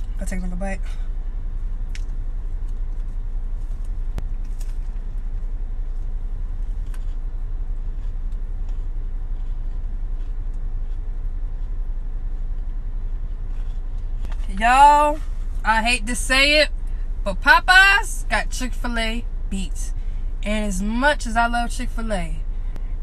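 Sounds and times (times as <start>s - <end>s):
idling car rumble inside cabin: 0.0s - 23.0s
crunchy chewing: 1.9s - 14.5s.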